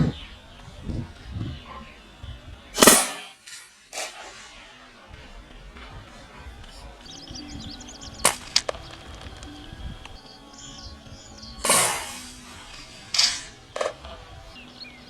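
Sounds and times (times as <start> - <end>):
small birds chirping: 0.0 - 15.0
air rifle shots: 2.8 - 7.4, 8.2 - 10.3, 11.5 - 15.0.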